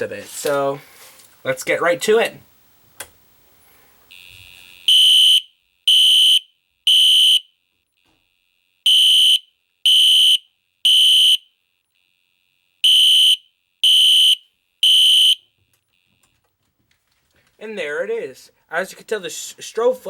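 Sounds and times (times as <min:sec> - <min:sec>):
alarm horn high-pitched beeps: 0:04.1 - 0:16.4.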